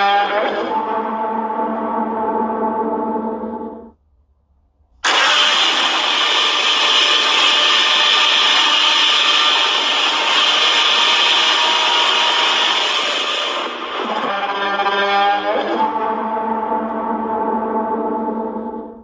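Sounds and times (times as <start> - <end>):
loud harsh monster roar: 0.0 - 1.4, 5.0 - 17.1.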